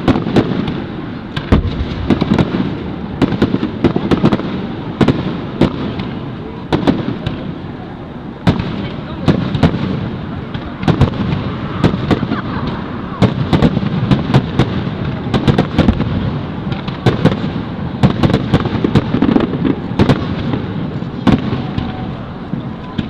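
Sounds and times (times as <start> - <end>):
fireworks shells bursting: 0.0 - 4.7
continuous low rumble: 0.0 - 23.0.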